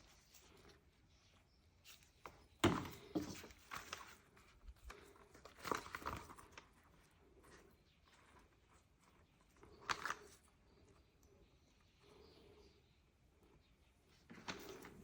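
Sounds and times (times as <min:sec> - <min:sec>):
knocks and rustles of food preparation: 0:01.9 - 0:10.5.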